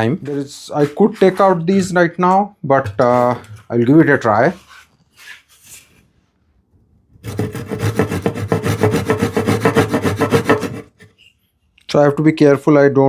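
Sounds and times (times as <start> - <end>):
hand saw cutting wood: 7.2 - 11.2.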